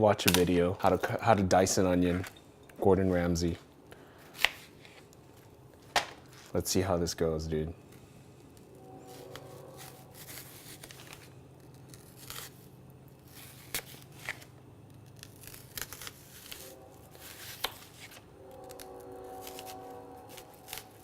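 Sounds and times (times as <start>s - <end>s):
knife slicing through onion: 9.1s - 11.2s.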